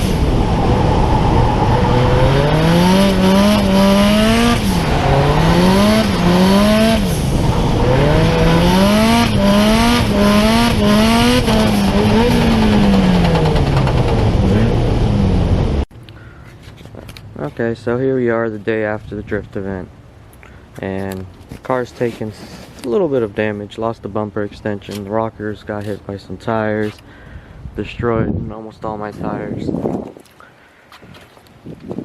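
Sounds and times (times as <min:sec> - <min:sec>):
car engine revving: 0:00.0 - 0:15.9.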